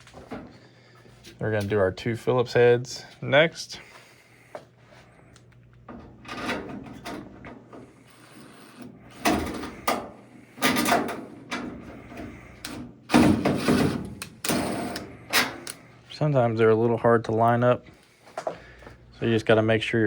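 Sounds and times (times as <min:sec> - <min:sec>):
sheet metal scraping and rubbing: 0:06.3 - 0:15.6
screws being driven into metal: 0:12.6 - 0:15.8.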